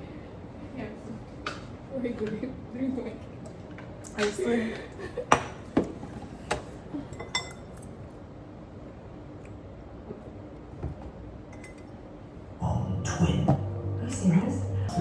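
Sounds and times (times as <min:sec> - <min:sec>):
glassware and dishes clinking: 0:07.1 - 0:07.7, 0:11.5 - 0:11.9.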